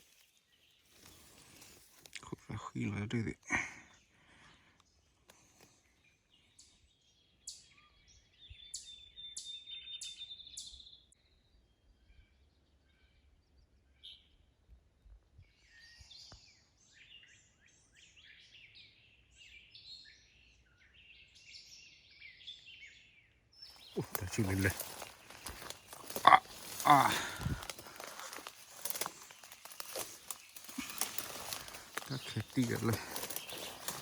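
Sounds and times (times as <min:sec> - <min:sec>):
birds calling: 0:23.6 - 0:34.0.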